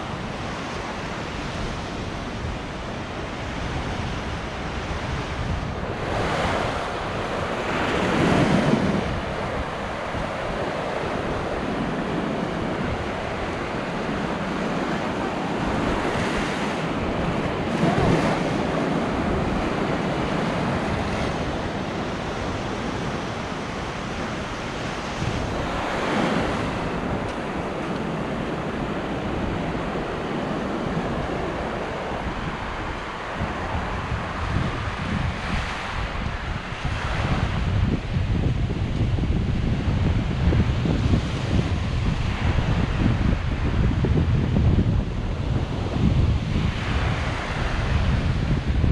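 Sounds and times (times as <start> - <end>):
ocean waves breaking on beach: 0.0 - 48.9
wind buffeting microphone: 0.0 - 48.9
loud wave crashes: 12.8 - 35.0.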